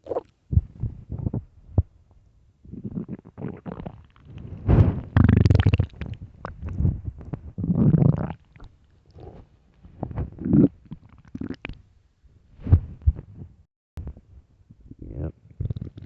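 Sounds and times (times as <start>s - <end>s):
stomach growling and gurgling: 0.0s - 1.9s, 2.6s - 11.8s, 14.9s - 16.0s.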